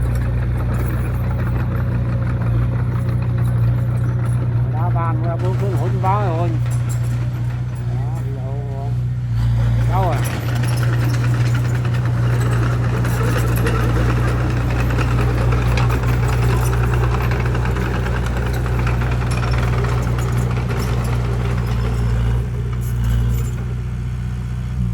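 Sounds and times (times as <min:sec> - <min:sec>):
machinery clatter: 0:00.0 - 0:23.8
diesel engine droning: 0:00.0 - 0:24.9.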